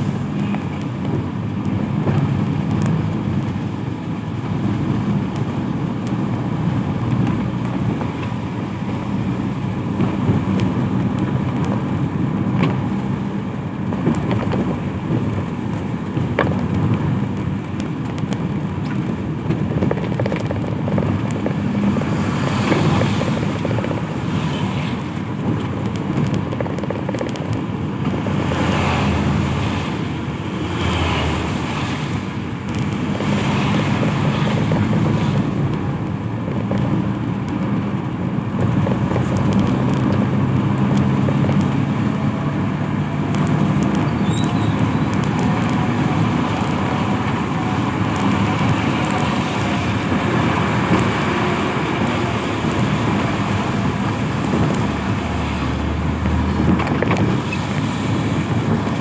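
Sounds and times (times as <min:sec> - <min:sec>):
low engine rumble: 0:00.0 - 0:59.0
tyres hissing on wet asphalt: 0:21.0 - 0:25.7, 0:27.8 - 0:36.1, 0:39.0 - 0:59.0.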